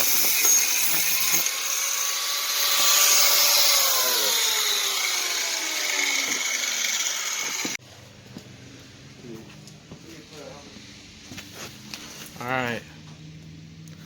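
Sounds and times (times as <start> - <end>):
angle grinder on metal: 0.0 - 7.8.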